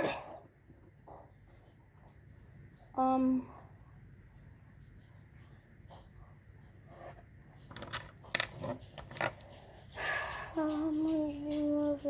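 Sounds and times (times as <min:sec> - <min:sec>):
light clicks and taps: 0:07.8 - 0:12.0.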